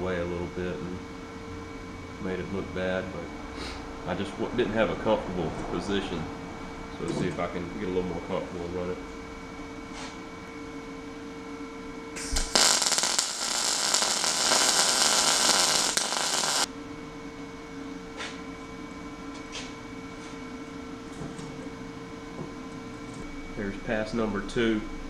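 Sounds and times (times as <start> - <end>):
steady hum: 0.0 - 25.0
welder arc crackling: 12.2 - 16.7.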